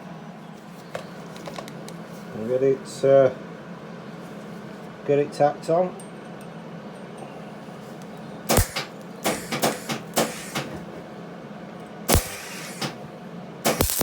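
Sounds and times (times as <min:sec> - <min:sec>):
welding arc crackle: 0:08.5 - 0:10.7, 0:12.1 - 0:13.0, 0:13.6 - 0:14.0.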